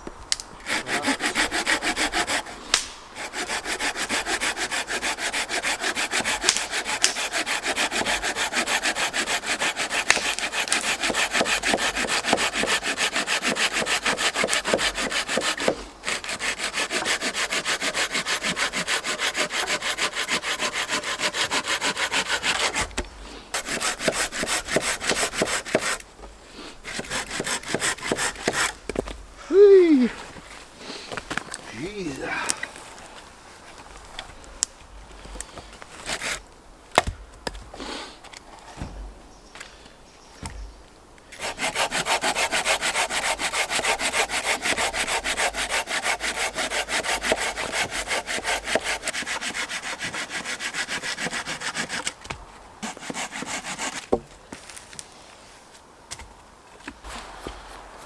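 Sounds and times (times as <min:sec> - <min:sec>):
hand saw cutting wood: 0:00.3 - 0:26.0, 0:26.8 - 0:29.1, 0:35.8 - 0:36.4, 0:41.3 - 0:54.8.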